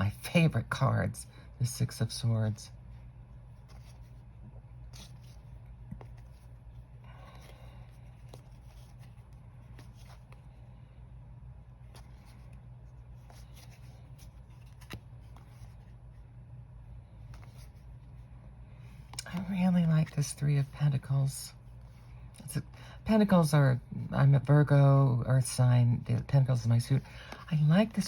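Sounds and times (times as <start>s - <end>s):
steady low hum: 0.0s - 28.0s
cards sliding and clicking: 4.8s - 6.6s, 11.9s - 15.9s.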